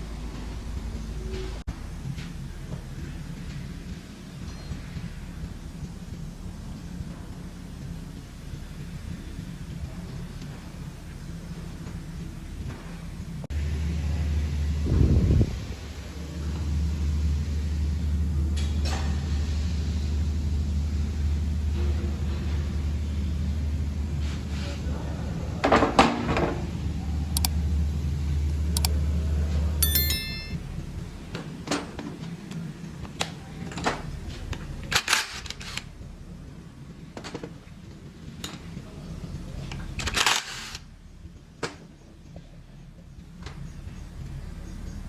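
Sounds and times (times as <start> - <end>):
steady low hum: 0.0 - 35.1
metal tools clinking: 29.8 - 30.6.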